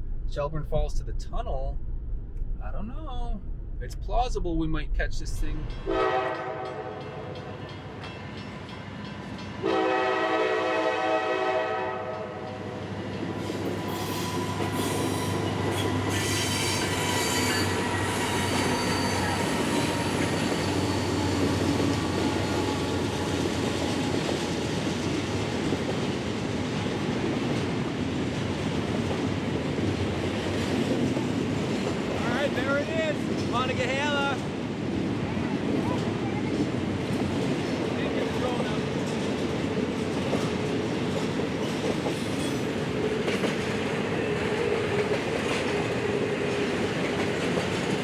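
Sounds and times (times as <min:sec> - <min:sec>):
freight train rumbling: 0:00.0 - 0:48.0
locomotive air horn: 0:05.9 - 0:07.0, 0:09.6 - 0:12.4.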